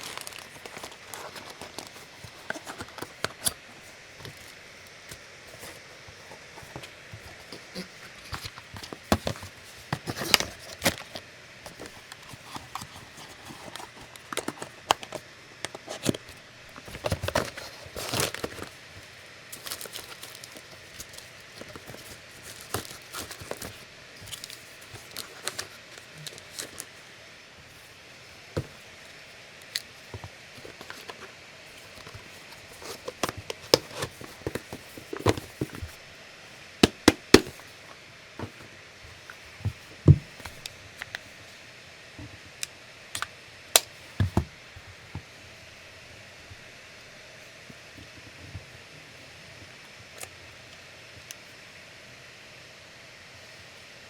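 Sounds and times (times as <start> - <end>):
packaging crinkling and rustling: 0.0 - 27.0, 29.7 - 36.0.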